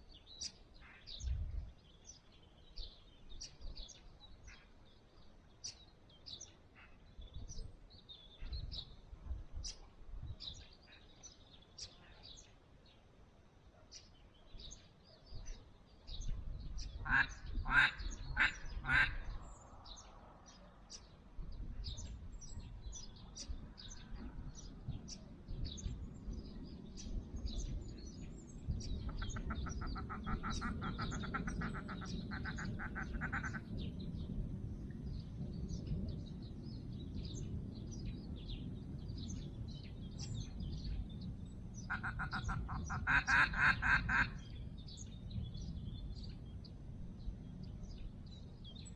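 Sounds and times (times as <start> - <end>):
low wind rumble: 0.0 - 48.9
small birds chirping: 0.0 - 48.9
mallard quacking: 17.1 - 19.2, 29.2 - 33.6, 41.9 - 44.4.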